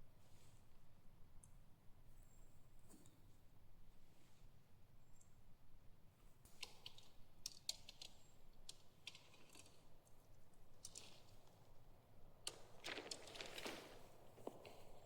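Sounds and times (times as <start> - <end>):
tent gear clicking and rattling: 6.6 - 15.0
material rustling: 12.5 - 15.0.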